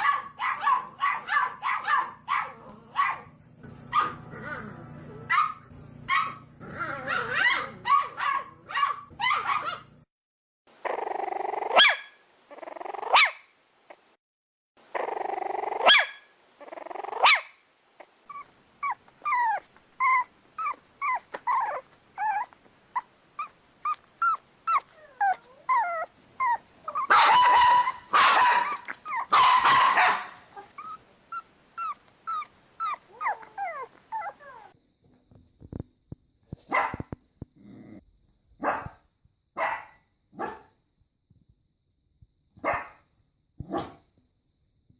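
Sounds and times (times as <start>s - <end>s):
puppies barking and yipping: 0.0s - 10.0s, 24.2s - 31.0s
puppies whining: 3.9s - 10.0s, 18.0s - 34.8s.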